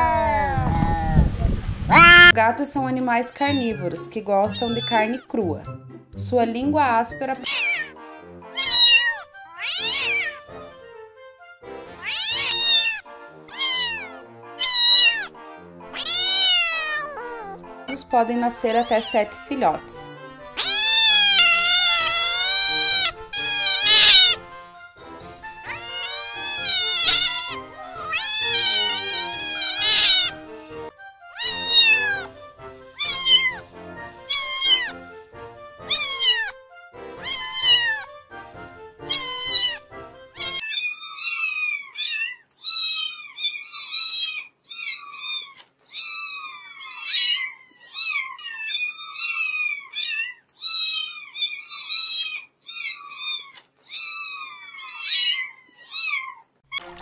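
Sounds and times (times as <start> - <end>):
cats meowing: 0.0 - 1.2, 1.9 - 2.4, 4.5 - 5.2, 7.4 - 10.5, 12.0 - 15.3, 15.9 - 17.7, 20.5 - 24.4, 25.6 - 30.5, 31.4 - 32.3, 33.0 - 33.6, 34.3 - 35.0, 35.9 - 36.6, 37.2 - 38.2, 39.0 - 57.0
high-pitched kitten mews: 1.9 - 2.4, 7.4 - 7.9, 8.6 - 10.3, 12.0 - 15.3, 16.0 - 17.6, 20.6 - 24.4, 25.7 - 30.3, 31.4 - 32.3, 33.0 - 33.6, 34.3 - 34.9, 35.9 - 36.5, 37.2 - 38.1, 39.1 - 39.8, 40.4 - 56.4.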